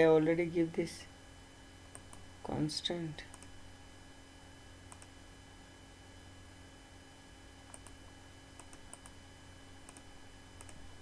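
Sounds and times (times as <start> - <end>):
steady low hum: 0.0 - 11.0
computer mouse clicks: 1.9 - 2.2, 3.3 - 3.5, 4.9 - 5.1, 7.6 - 8.0, 8.6 - 9.2, 9.8 - 10.8.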